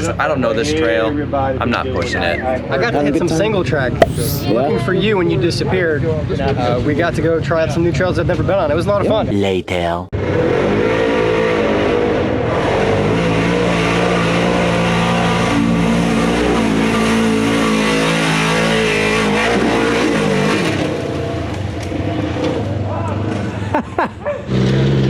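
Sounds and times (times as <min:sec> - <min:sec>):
buggy engine accelerating: 0:10.2 - 0:23.6, 0:24.4 - 0:25.0.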